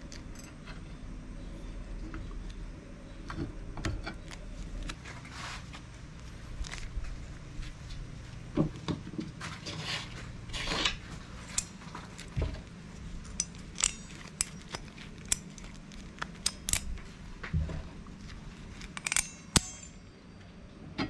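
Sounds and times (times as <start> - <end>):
metal tools clinking and scraping: 0.0 - 1.0, 9.6 - 20.4.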